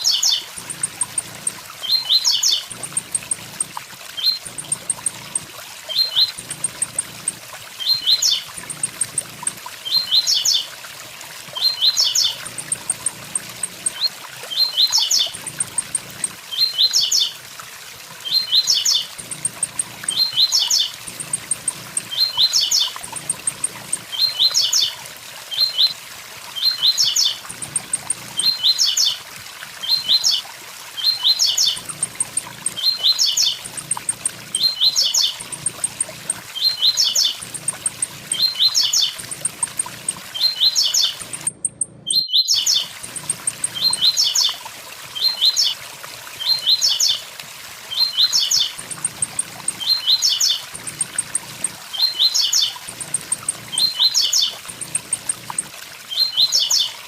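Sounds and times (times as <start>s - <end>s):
small bird singing high notes: 31.0s - 44.5s.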